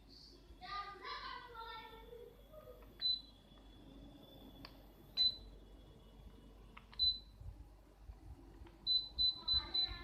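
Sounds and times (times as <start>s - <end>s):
air conditioner beeps: 2.0s - 10.0s.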